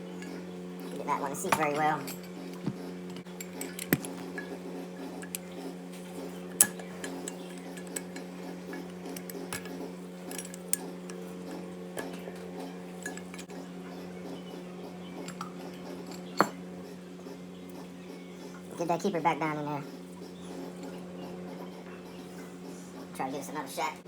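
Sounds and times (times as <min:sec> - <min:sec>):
steady low hum: 0:00.0 - 0:24.0
small metal clinks and taps: 0:01.5 - 0:05.5, 0:06.5 - 0:11.3, 0:13.0 - 0:13.5.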